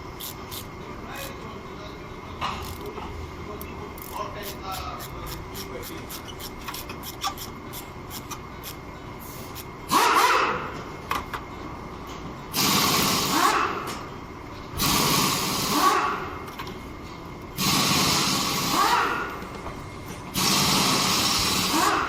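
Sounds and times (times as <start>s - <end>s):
hissing bursts of spray: 12.6s - 13.5s, 17.6s - 18.9s, 20.4s - 21.9s.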